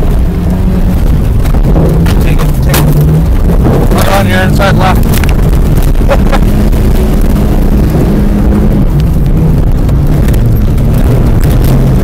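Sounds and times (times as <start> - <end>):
car engine running hard: 0.0 - 12.0.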